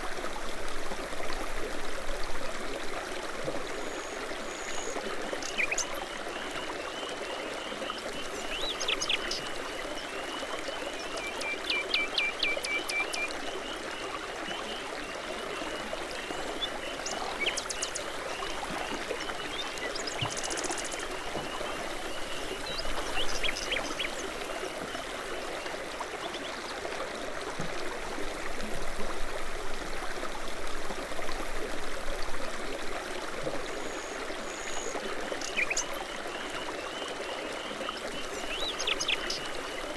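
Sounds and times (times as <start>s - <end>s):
brook babbling over stones: 0.0s - 39.9s
songbirds chirping and trilling: 15.7s - 24.6s, 36.9s - 39.9s.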